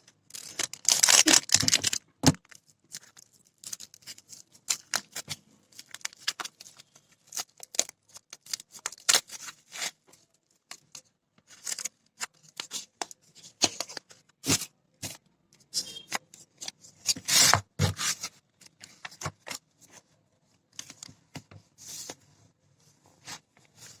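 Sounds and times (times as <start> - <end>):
paper and plastic crinkling: 0.0 - 15.2.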